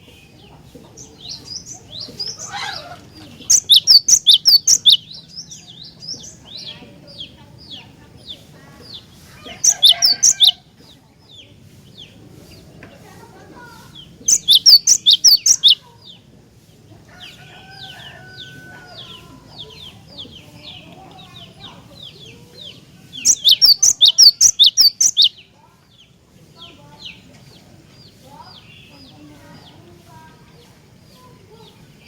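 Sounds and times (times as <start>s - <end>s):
faint bird chirps: 0.0s - 32.0s
bird singing rapid high notes: 3.4s - 7.8s, 9.0s - 10.6s, 13.9s - 16.0s, 23.1s - 25.5s.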